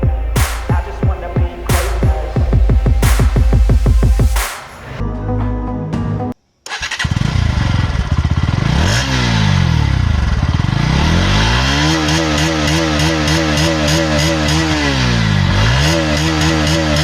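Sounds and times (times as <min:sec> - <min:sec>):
motorcycle engine revving: 0:06.8 - 0:17.0.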